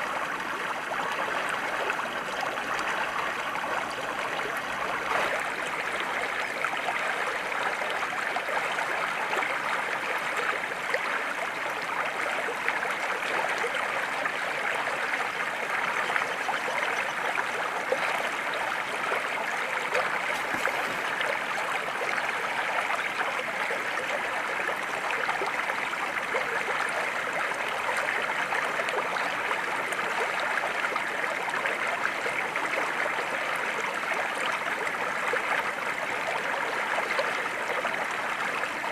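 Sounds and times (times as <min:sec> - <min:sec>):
flowing water rushing: 0:00.0 - 0:08.6, 0:17.1 - 0:23.2.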